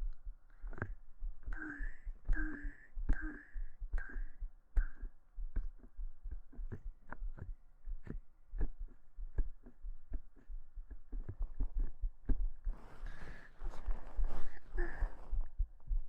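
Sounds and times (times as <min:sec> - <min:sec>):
heartbeat thumps: 0:00.0 - 0:16.0
rustling against microphone: 0:12.6 - 0:15.5.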